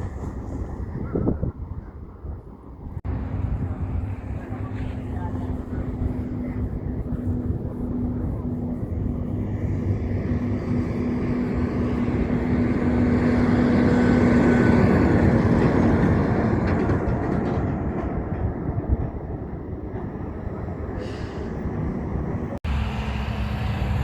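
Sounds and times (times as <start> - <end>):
heavy truck driving past: 3.1 - 17.4, 21.0 - 24.0.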